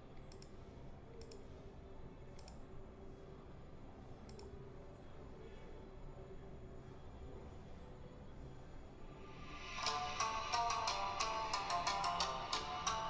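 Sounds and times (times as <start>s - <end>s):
faint steady hum: 0.0s - 13.0s
faint double clicks: 4.3s - 4.5s
low hiss: 9.1s - 13.0s.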